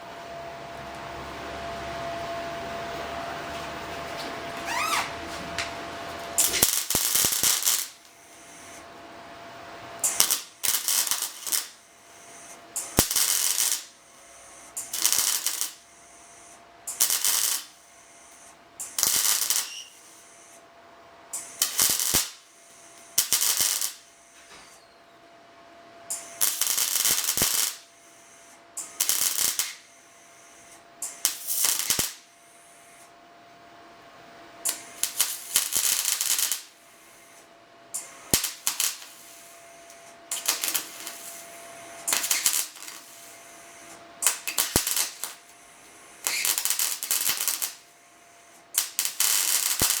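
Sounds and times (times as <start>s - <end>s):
faint steady hum: 0.0s - 50.0s
welder crackling: 6.3s - 8.9s, 10.0s - 20.6s, 21.4s - 24.8s, 26.1s - 27.9s, 28.8s - 29.9s, 31.0s - 32.3s, 34.6s - 37.4s, 38.0s - 47.9s, 48.5s - 50.0s.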